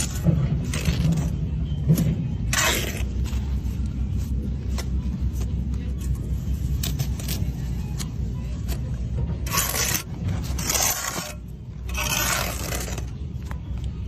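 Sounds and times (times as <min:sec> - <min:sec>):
scraping strokes: 0:09.4 - 0:13.2.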